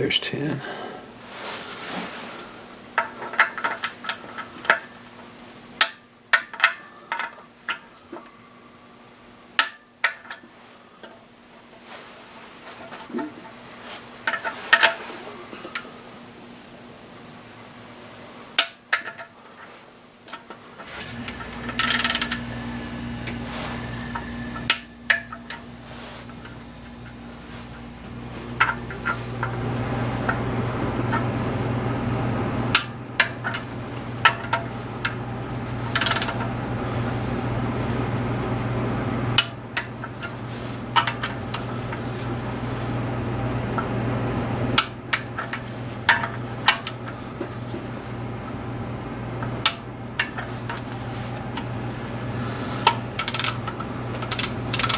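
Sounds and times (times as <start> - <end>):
steady low hum: 20.9 - 54.9.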